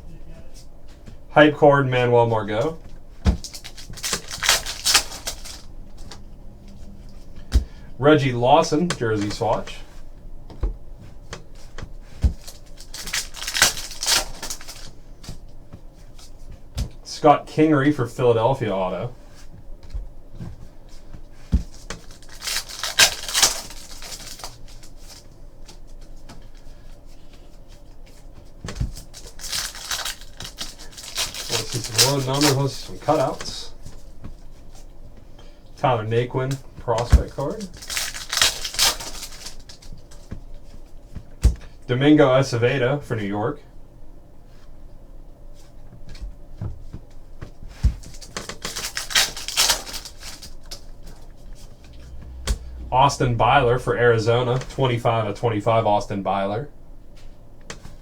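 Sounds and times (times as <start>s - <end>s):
rustling: 2.7s - 17.0s, 19.2s - 35.7s, 36.6s - 41.8s, 46.8s - 54.8s.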